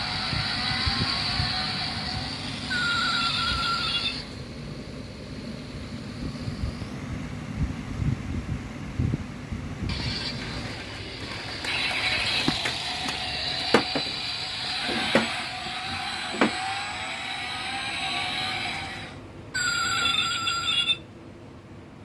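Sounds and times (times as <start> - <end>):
toy engine-revving sound effect: 0.0 - 4.3, 9.9 - 21.0.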